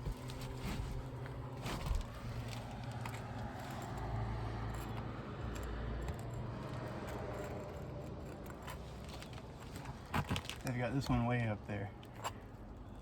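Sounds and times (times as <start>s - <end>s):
nail puller clinking and scraping: 2.8s - 10.8s.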